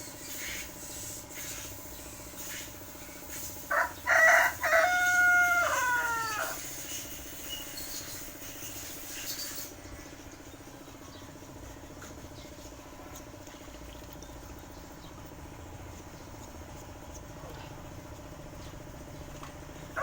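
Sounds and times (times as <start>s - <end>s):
pulsing mechanical hum: 0.0s - 20.0s
rooster crowing: 3.7s - 6.7s.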